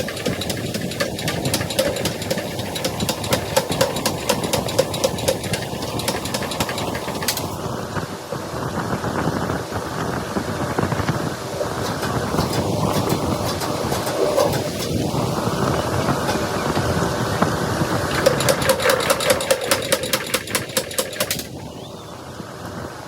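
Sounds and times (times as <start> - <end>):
hammer blows on hot steel: 0.0 - 7.6
steady rushing noise: 0.0 - 21.6.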